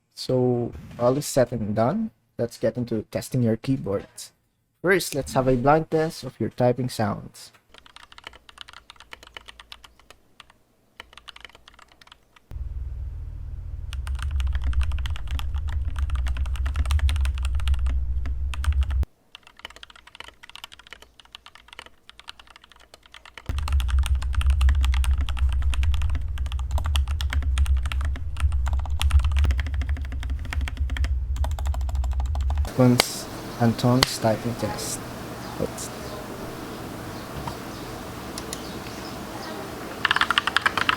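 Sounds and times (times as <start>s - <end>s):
mechanical keyboard typing: 7.7s - 12.4s, 14.0s - 33.2s, 39.9s - 40.9s.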